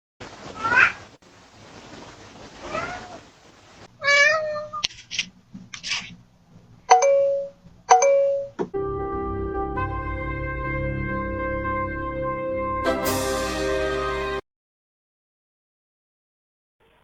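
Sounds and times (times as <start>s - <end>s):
cat meowing: 0.6s - 1.0s, 2.6s - 3.2s, 4.0s - 4.9s
steady music: 7.0s - 14.4s.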